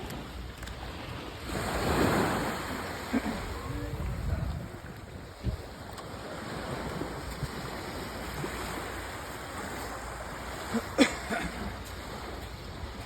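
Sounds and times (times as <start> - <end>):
wind on microphone: 0.0 - 10.3
small waves washing on beach: 0.0 - 13.0.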